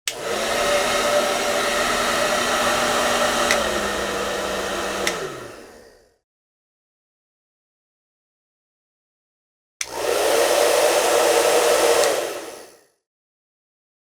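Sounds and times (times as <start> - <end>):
hair dryer switch click: 0.1 - 5.8, 9.8 - 10.3, 11.8 - 12.5
hair dryer blowing: 0.1 - 6.2, 9.8 - 12.8.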